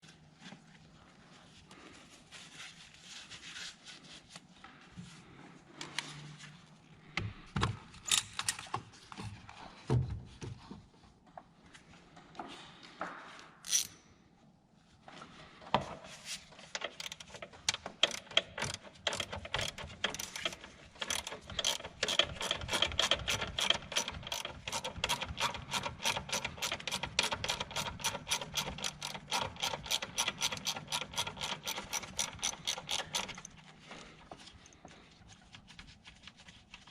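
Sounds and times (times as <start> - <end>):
ratchet wrench clicking: 13.7 - 14.0, 16.8 - 33.6
tools and parts knocking: 16.7 - 33.6.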